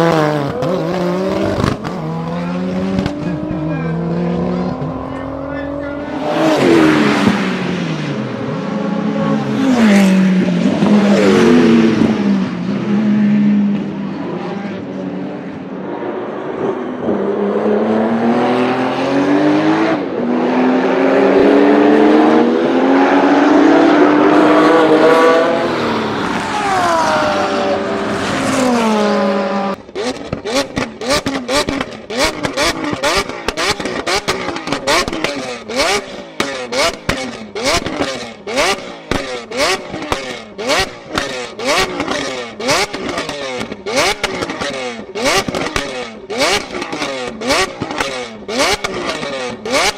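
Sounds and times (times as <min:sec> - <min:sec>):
car engine revving hard: 0:00.0 - 0:15.4, 0:16.5 - 0:49.9
exhaust popping and banging: 0:00.1 - 0:05.6, 0:29.8 - 0:49.9.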